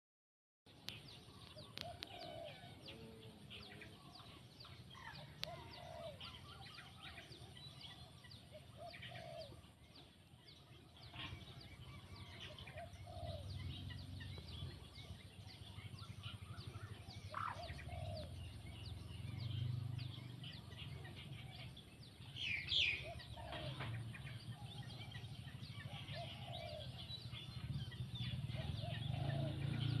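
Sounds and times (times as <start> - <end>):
birds clucking: 0.9 - 9.8, 10.9 - 30.0
low rumbling background: 26.8 - 30.0.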